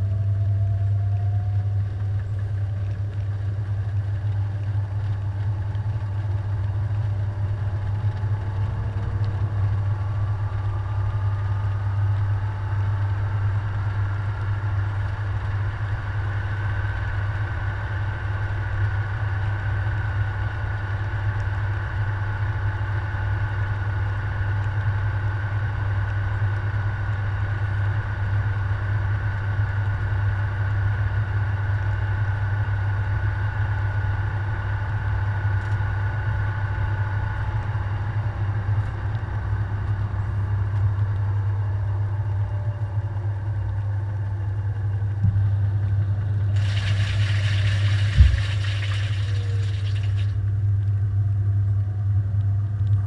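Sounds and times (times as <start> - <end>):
washing machine humming: 0.0 - 24.5, 37.0 - 52.8
motor whine: 38.3 - 52.2
thump inside washing machine: 48.0 - 49.0.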